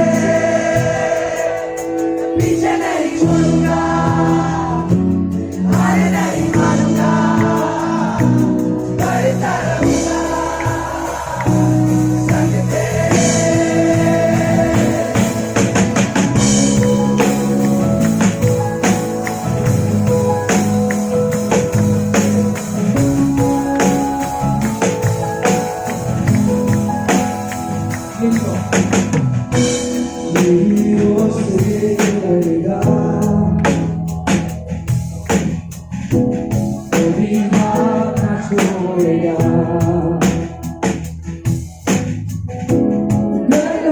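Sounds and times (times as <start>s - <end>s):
live band playing worship song: 0.0s - 43.9s
steady percussion beat: 0.0s - 43.9s
person singing: 29.8s - 34.0s, 43.4s - 43.9s.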